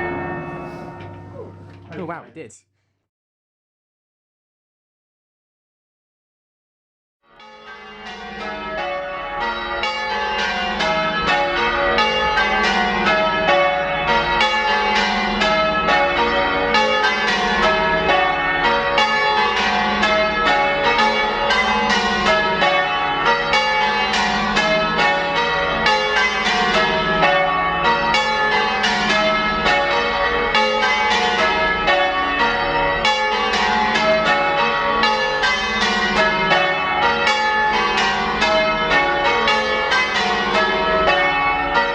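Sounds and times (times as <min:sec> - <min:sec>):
church bells change ringing: 0:00.0 - 0:02.2, 0:07.3 - 0:41.9
low booming bell hum: 0:00.0 - 0:02.2.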